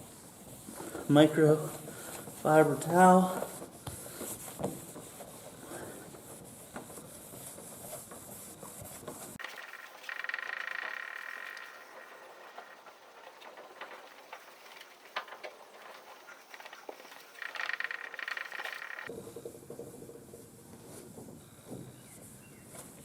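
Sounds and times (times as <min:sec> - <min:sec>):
frog trilling: 0:09.4 - 0:13.0, 0:15.8 - 0:19.1
faint scattered clicks: 0:09.4 - 0:19.1.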